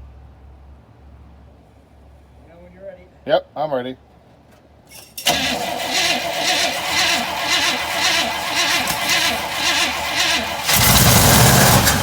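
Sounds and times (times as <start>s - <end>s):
starter motor cranking engine: 5.0s - 12.0s.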